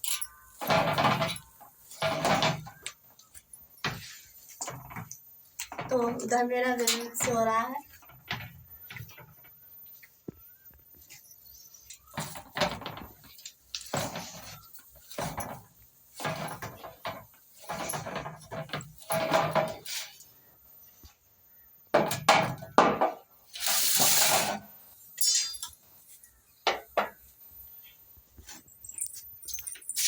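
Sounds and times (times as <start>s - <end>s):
pots and dishes clattering: 0.2s - 2.8s
hiss: 23.5s - 24.6s.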